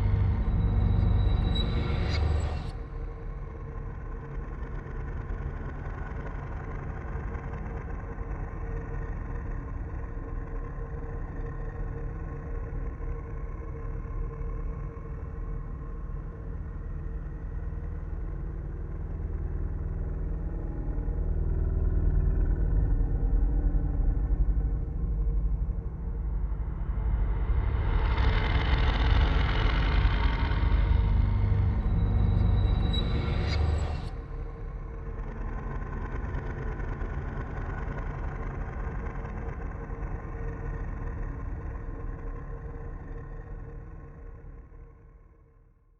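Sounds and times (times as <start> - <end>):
deep steady rumble: 0.0 - 2.7, 16.6 - 44.2.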